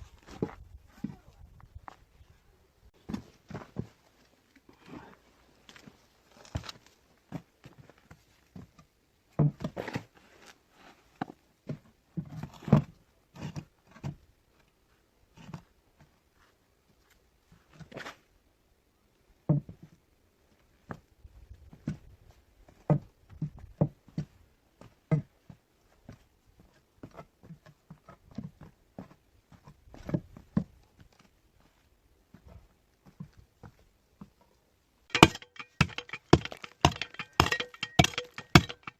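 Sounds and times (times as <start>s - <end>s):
knocks and thuds: 35.1s - 38.9s
scraping: 35.1s - 38.9s.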